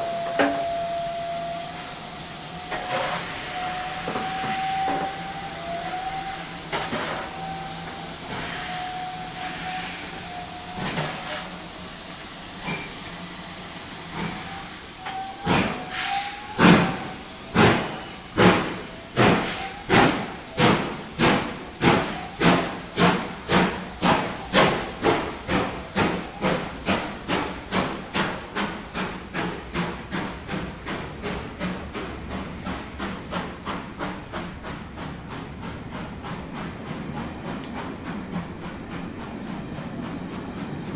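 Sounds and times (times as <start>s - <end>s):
faint wavering whistling tone: 0.0s - 6.5s
steam hissing: 0.0s - 40.8s
steam locomotive exhaust chuffs: 0.0s - 40.9s.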